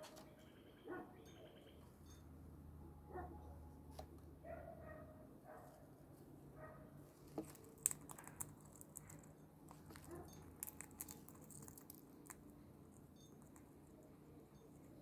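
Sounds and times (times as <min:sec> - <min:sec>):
parrot beak crunching food: 0:07.2 - 0:15.0.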